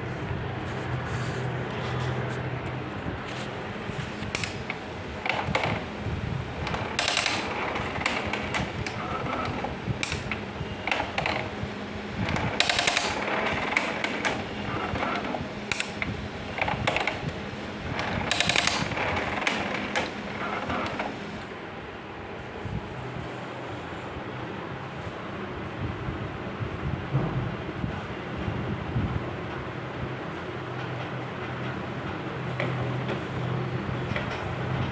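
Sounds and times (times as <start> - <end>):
printer low hum: 0.5 - 21.5
printer ratcheting clatter: 3.3 - 21.5.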